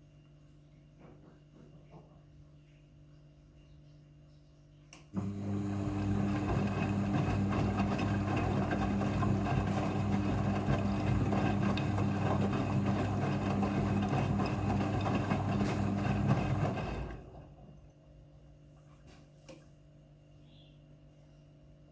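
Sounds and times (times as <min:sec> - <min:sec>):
washing machine motor hum: 0:05.1 - 0:17.8
washing machine churning: 0:05.2 - 0:17.7.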